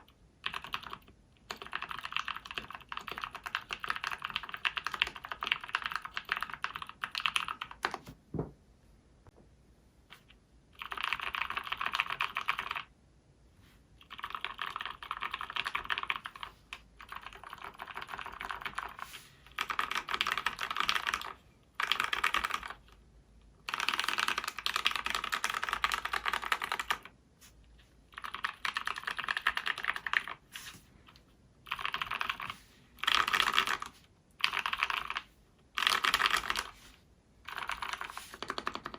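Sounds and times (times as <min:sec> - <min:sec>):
mechanical keyboard typing: 0:00.0 - 0:08.2, 0:10.8 - 0:12.9, 0:14.0 - 0:19.0, 0:19.6 - 0:23.0, 0:23.6 - 0:27.1, 0:28.1 - 0:30.4, 0:31.7 - 0:36.8, 0:37.5 - 0:38.9.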